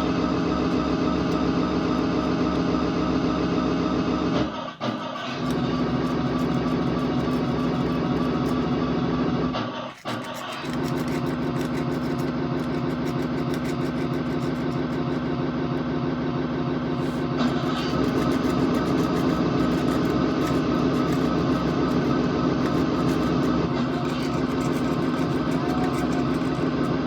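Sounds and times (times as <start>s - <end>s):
car engine running: 0.0s - 27.0s.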